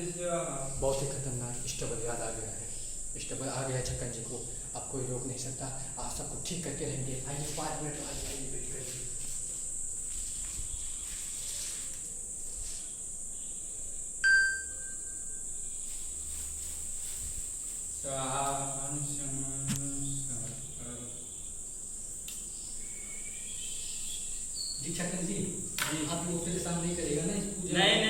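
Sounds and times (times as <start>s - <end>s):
crickets chirring: 0.0s - 28.0s
bell-like ding: 14.2s - 15.2s.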